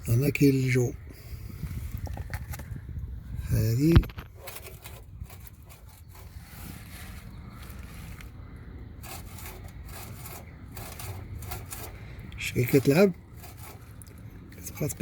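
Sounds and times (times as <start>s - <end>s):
low steady rumble: 1.0s - 15.0s
rubbing and scraping: 3.6s - 15.0s.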